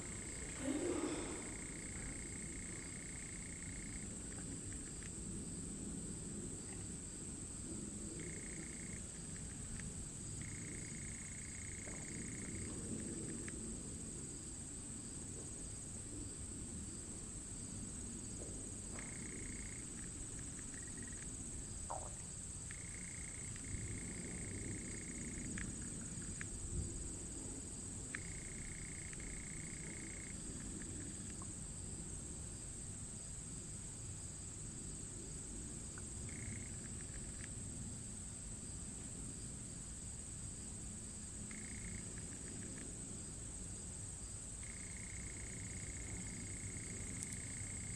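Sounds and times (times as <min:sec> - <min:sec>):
insect chorus: 0:00.0 - 0:47.9
low background rumble: 0:00.0 - 0:47.9
faint clicks: 0:19.0 - 0:21.3, 0:21.9 - 0:24.1, 0:24.8 - 0:26.5, 0:28.1 - 0:31.5, 0:41.5 - 0:43.0.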